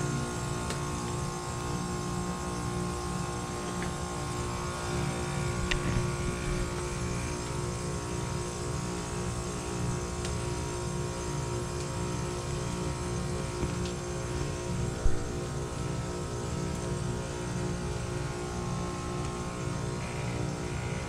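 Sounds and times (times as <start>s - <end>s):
heat pump compressor humming: 0.0s - 21.0s.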